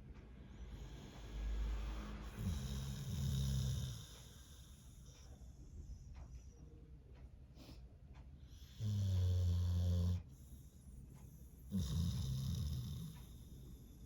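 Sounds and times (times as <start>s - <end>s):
dog snoring: 0.7s - 5.5s, 8.4s - 14.0s.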